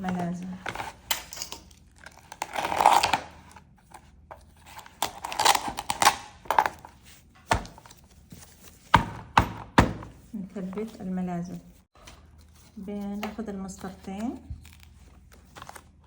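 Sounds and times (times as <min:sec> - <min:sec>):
paper crinkling and rustling: 0:10.6 - 0:16.0.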